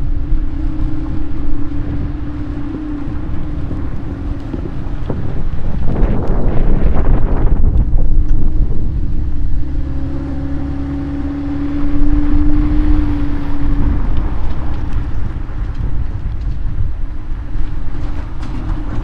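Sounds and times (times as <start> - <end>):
road and wind noise: 0.0 - 19.0
steady humming tone: 0.0 - 19.0
trailer rolling on road: 0.0 - 19.0.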